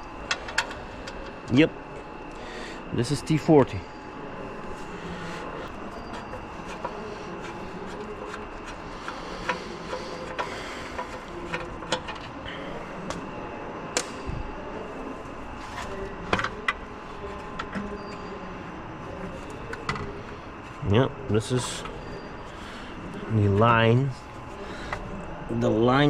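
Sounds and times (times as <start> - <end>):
steady background hum: 0.0 - 26.0
hand tools clicking and knocking: 6.1 - 12.4.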